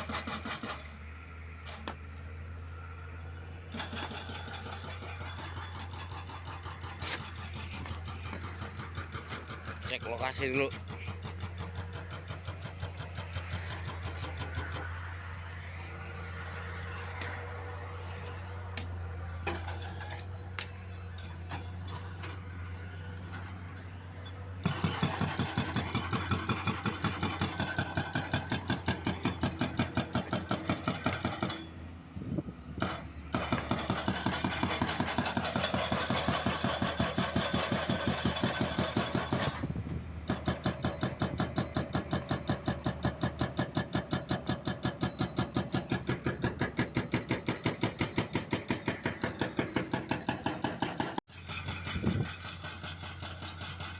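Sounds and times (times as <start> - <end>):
hydraulic breaker hammering concrete: 0.0 - 0.8, 3.7 - 15.1, 24.6 - 31.7, 32.8 - 53.9
diesel engine running: 0.0 - 53.9.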